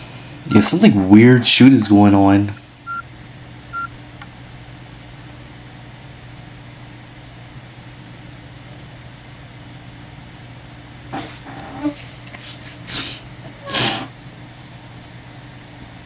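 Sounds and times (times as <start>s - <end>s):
click: 2.9s - 4.3s
short high beep: 3.7s - 4.0s.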